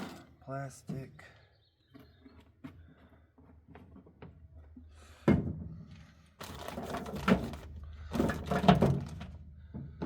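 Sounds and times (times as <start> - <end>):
rustling and scraping: 5.9 - 9.4.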